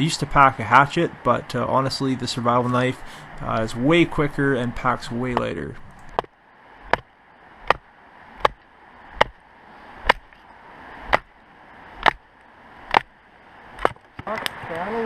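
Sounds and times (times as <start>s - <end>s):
knife chopping firewood: 5.3s - 6.3s, 6.9s - 7.8s, 8.4s - 8.6s, 9.2s - 9.4s, 10.0s - 10.3s, 11.1s - 11.3s, 12.0s - 12.2s, 12.9s - 13.1s, 13.8s - 14.3s.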